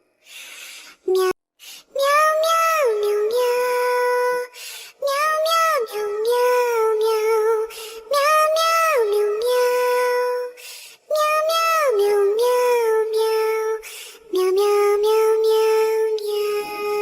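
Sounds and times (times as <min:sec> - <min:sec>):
high child-like singing voice: 0:01.0 - 0:17.0.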